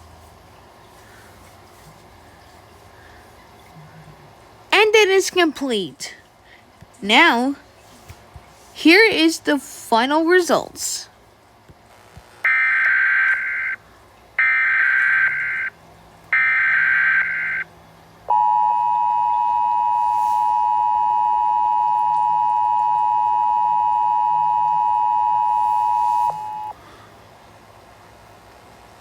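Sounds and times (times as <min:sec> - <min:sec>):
screeching data tones: 0:12.5 - 0:13.8, 0:14.4 - 0:15.7, 0:16.4 - 0:17.7, 0:18.3 - 0:26.7
two-tone attention signal: 0:18.3 - 0:26.7.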